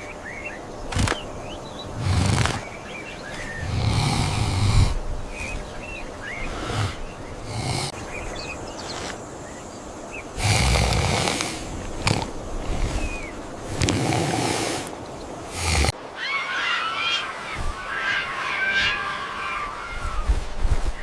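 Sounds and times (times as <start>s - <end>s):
small birds chirping: 0.0s - 21.0s
wild boar grunting: 2.0s - 5.5s, 6.3s - 8.0s, 10.4s - 14.9s, 15.5s - 16.0s.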